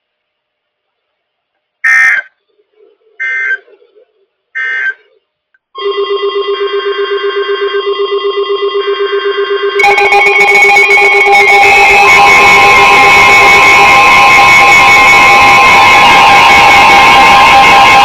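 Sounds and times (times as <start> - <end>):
loud alarm tone: 3.2 - 3.7, 4.6 - 5.1, 5.8 - 18.0
rapidly pulsing electronic alert tone: 3.2 - 3.7, 5.8 - 18.0
warbling data bursts: 9.8 - 18.0.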